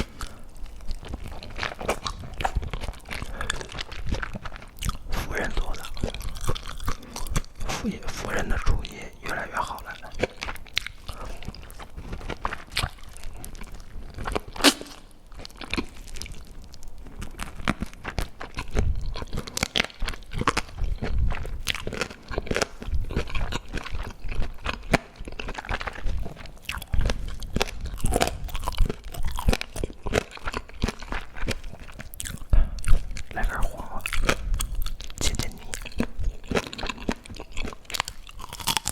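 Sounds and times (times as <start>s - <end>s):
person chewing and crunching: 0.0s - 38.9s
wet mouth clicks: 14.6s - 15.1s.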